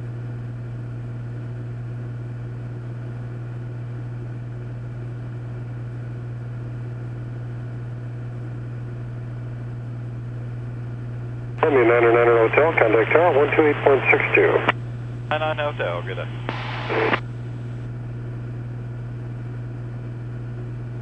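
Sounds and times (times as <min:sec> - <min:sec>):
aircraft engine and propeller drone: 0:11.6 - 0:16.5.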